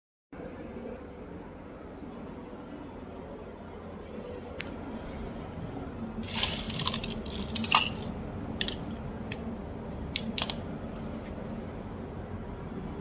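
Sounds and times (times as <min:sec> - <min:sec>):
steady low hum: 0:00.4 - 0:13.0
small hard objects clattering: 0:06.2 - 0:08.8.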